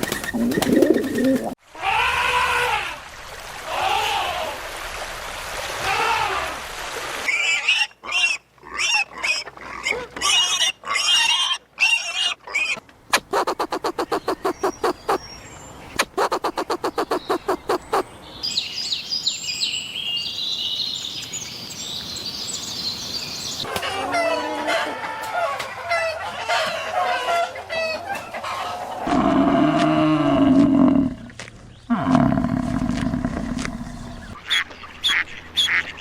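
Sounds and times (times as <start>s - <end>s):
farm animals calling: 7.3s - 15.3s, 16.0s - 18.1s, 23.6s - 31.1s, 31.9s - 36.0s
high bird chirping: 13.3s - 23.7s.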